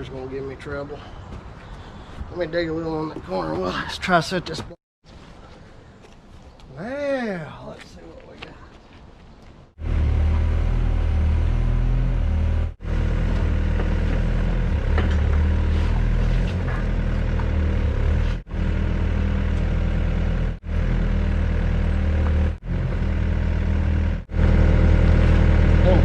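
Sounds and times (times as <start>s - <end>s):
diesel engine running: 9.8s - 26.0s.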